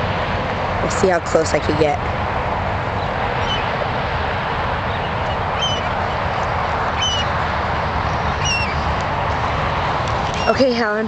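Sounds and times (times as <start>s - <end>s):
steady background rumble: 0.0s - 11.0s
wild birds calling: 2.8s - 10.9s.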